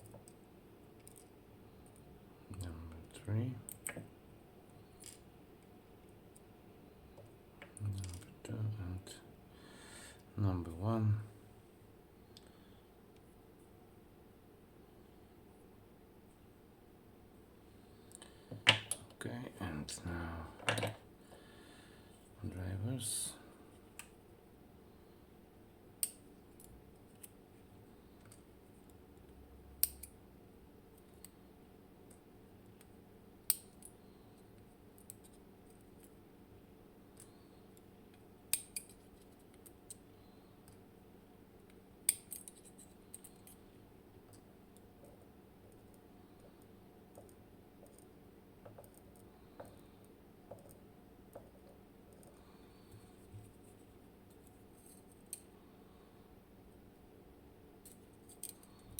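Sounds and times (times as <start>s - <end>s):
low steady hum: 0.0s - 58.9s
faint ticks and scrapes: 37.1s - 40.8s, 41.7s - 55.6s
small metallic clicks: 57.8s - 58.9s.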